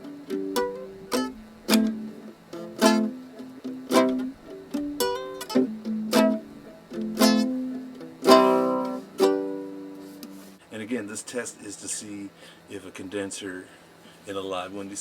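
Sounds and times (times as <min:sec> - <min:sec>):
nylon string guitar strumming: 0:00.0 - 0:10.6
picked run of single notes: 0:00.0 - 0:10.6.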